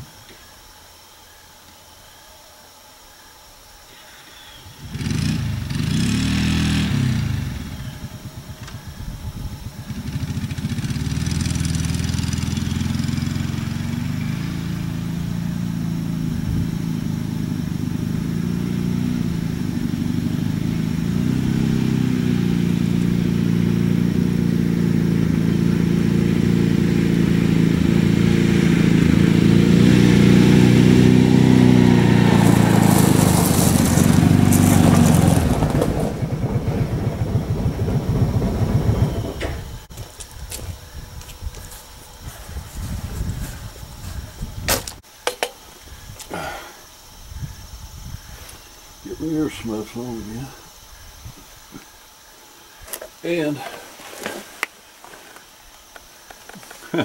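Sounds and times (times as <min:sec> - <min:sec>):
small engine running: 0:04.3 - 0:45.1, 0:45.8 - 0:54.2, 0:55.0 - 0:57.0.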